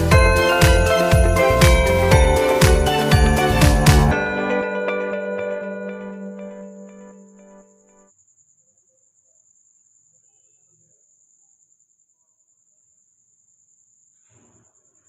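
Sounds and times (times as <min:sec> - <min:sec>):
background music: 0:00.0 - 0:08.0.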